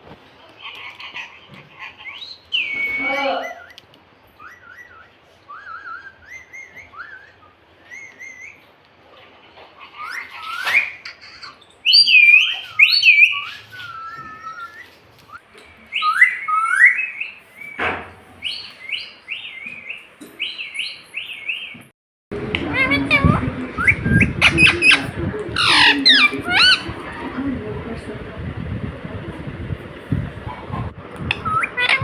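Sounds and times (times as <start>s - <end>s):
parrot chirping and whistling: 2.0s - 3.8s, 4.4s - 8.6s, 10.0s - 17.8s, 23.8s - 26.8s, 31.3s - 32.0s.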